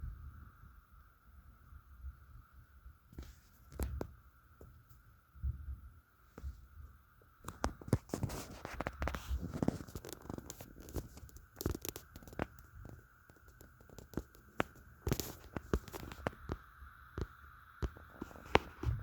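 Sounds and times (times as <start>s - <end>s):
faint high-pitched hum: 0.0s - 19.0s
scraping rustles: 7.8s - 16.4s.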